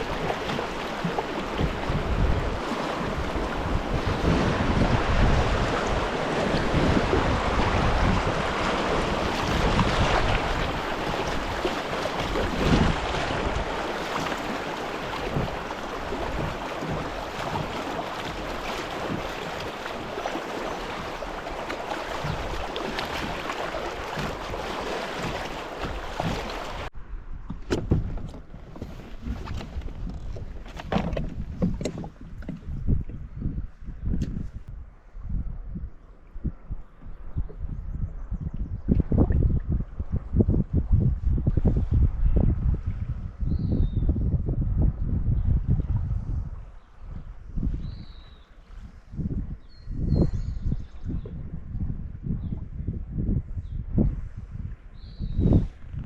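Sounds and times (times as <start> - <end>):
rushing river water: 0.0 - 26.9
wind on microphone: 0.0 - 56.0.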